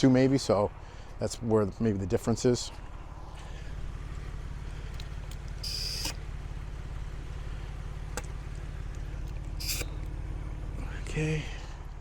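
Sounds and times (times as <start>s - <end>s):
low pulsing hum: 2.7s - 12.0s
short hiss of air: 9.6s - 9.9s.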